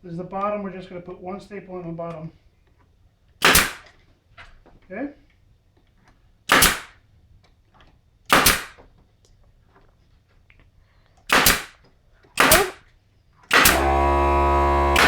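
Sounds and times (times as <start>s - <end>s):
pneumatic staple gun firing: 3.4s - 3.9s, 6.5s - 7.0s, 8.3s - 8.8s, 11.3s - 11.8s, 12.4s - 12.8s, 13.5s - 15.0s.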